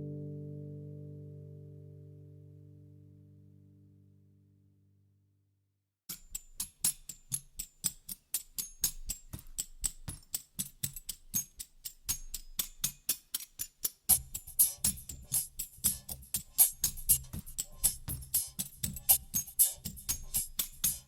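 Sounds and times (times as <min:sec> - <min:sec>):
fast percussion taps: 0:06.1 - 0:21.0.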